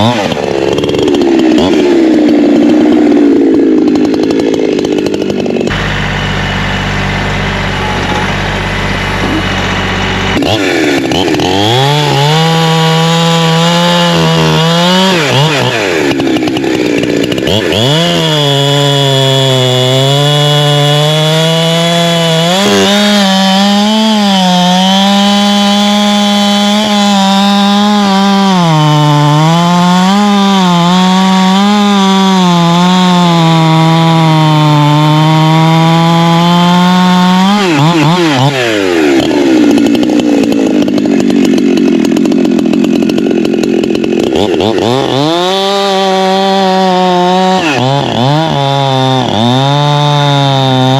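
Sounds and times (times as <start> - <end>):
chainsaw cutting wood: 0.0 - 50.9.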